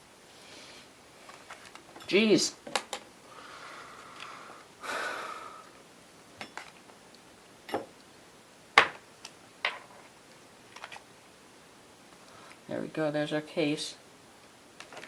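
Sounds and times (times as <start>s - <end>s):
breathy exhales: 3.3s - 5.8s.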